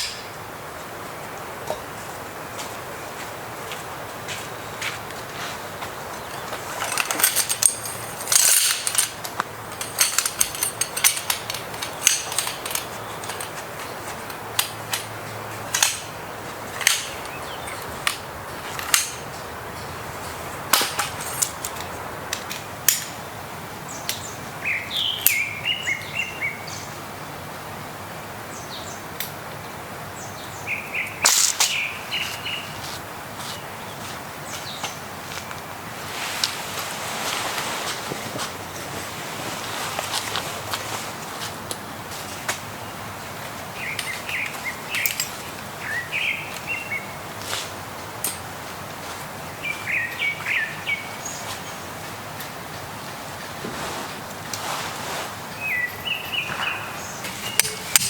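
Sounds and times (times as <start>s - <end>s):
bird chirping: 17.0s - 18.1s, 23.9s - 27.0s, 30.2s - 32.9s, 43.8s - 47.2s, 49.5s - 51.8s, 55.5s - 58.0s
sharp clicks and knocks: 56.5s - 58.0s.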